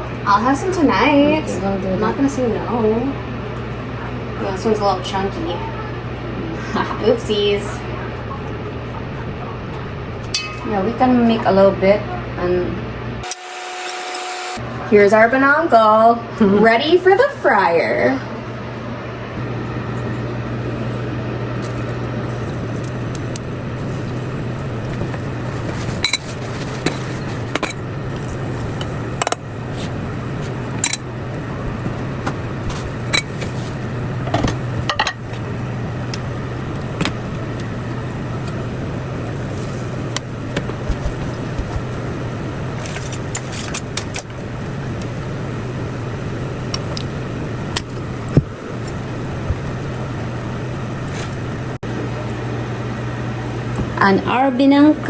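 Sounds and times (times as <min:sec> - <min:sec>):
low hum with hiss: 0:00.0 - 0:13.4, 0:14.4 - 0:55.0
utensils clicking and clinking: 0:25.1 - 0:31.1, 0:42.8 - 0:44.3.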